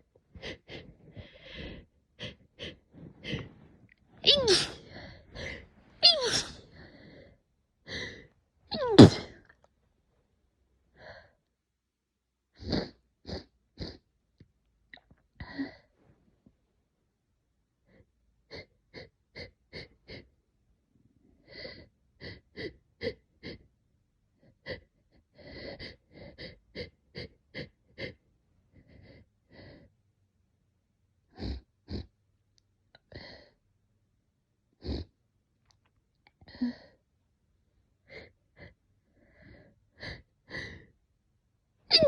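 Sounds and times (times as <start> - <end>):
person's hitching breaths: 0.0 - 8.3.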